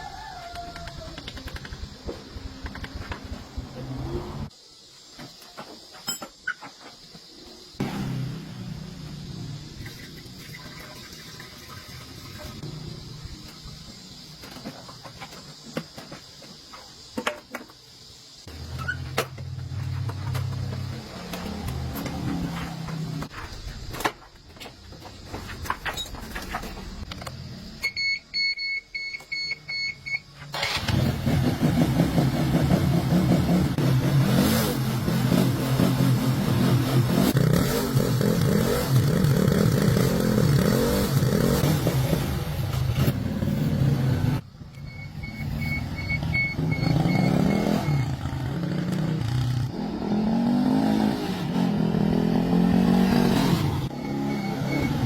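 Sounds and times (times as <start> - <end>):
motorcycle engine revving: 7.8 - 9.8, 30.6 - 44.4, 45.1 - 55.0
short electronic beeps: 27.8 - 30.3, 44.8 - 48.3, 53.9 - 55.0.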